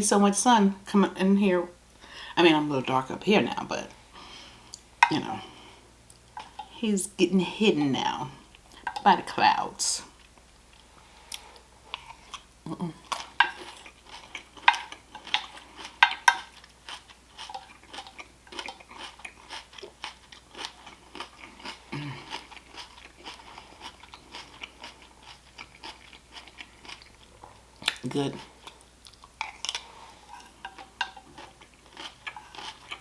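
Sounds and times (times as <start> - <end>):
person chewing crunchy food: 6.1 - 6.8, 10.1 - 33.0.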